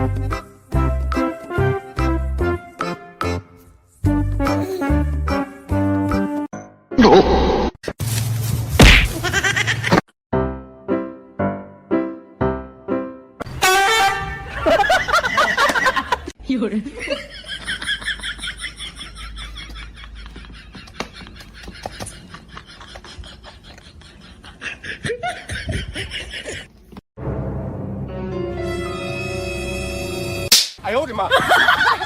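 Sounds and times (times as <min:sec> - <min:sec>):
short voice sound: 0:04.5 - 0:05.0
piano chords: 0:27.2 - 0:30.5.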